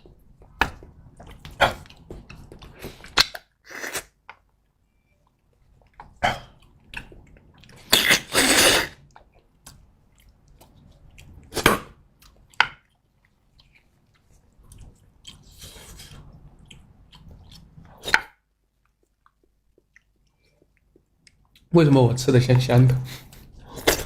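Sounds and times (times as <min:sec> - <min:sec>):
quiet chewing: 0:00.0 - 0:03.5, 0:04.3 - 0:07.9, 0:09.0 - 0:18.1, 0:18.7 - 0:21.7.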